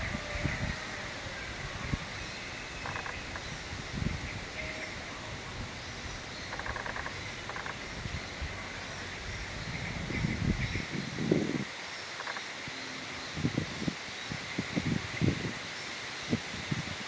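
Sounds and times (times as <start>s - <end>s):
wind buffeting microphone: 0.0s - 12.3s, 13.3s - 15.7s
outdoor background noise: 0.0s - 17.0s
birds trilling: 2.3s - 3.7s, 4.8s - 10.6s, 12.0s - 12.4s.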